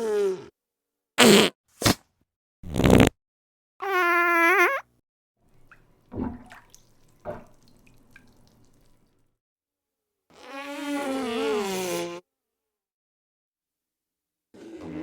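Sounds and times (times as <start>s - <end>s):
fart sound effects: 1.2s - 2.0s, 2.6s - 3.2s.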